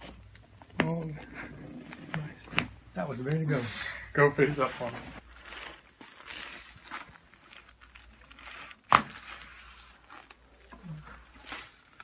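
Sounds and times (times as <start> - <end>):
rustling and crinkling: 4.4 - 12.0.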